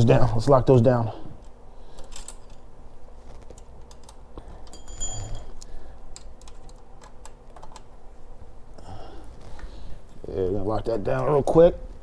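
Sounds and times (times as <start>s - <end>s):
hand tools clicking and clinking: 3.5s - 7.9s
high metallic ring: 4.7s - 5.5s.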